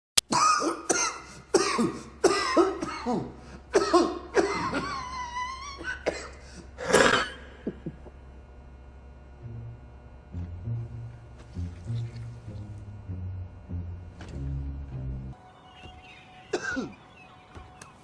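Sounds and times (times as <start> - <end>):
man coughing harshly: 0.3 - 5.2, 5.8 - 8.0, 16.5 - 17.0.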